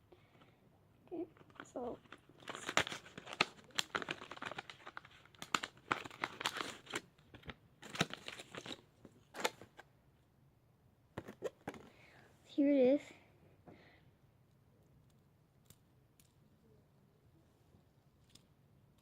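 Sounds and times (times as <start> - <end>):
packaging crinkling and tearing: 1.4 - 9.8.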